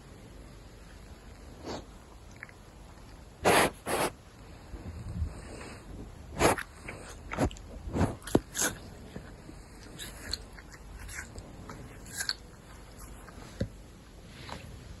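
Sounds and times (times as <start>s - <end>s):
wild cat sneezing: 3.4s - 4.2s.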